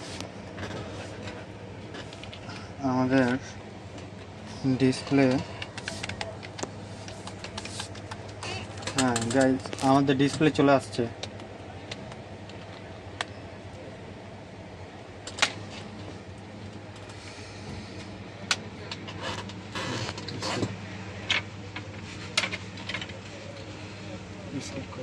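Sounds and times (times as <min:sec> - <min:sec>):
rustling handling noise: 0:00.0 - 0:10.6
low electrical hum: 0:00.0 - 0:25.0.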